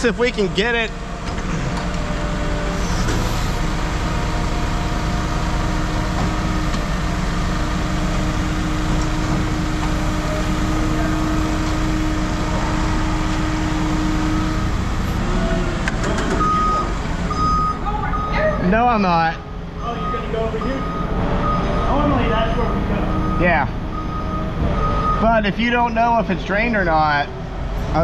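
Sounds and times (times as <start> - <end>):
heavy diesel machine rumbling: 0.0 - 28.0
reversing alarm beeping: 16.3 - 18.9, 19.8 - 26.4.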